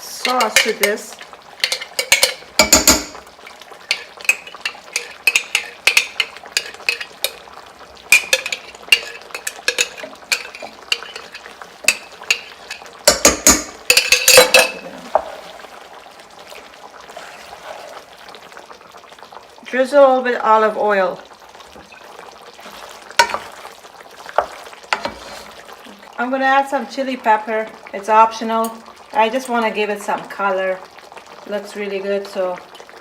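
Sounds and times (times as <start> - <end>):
utensil clinking against pan: 0.2 - 1.0, 1.6 - 3.2, 3.9 - 7.4, 8.1 - 14.8
utensil scraping pan: 3.8 - 7.4, 8.1 - 15.6, 17.1 - 18.1, 22.6 - 23.6, 24.4 - 25.7.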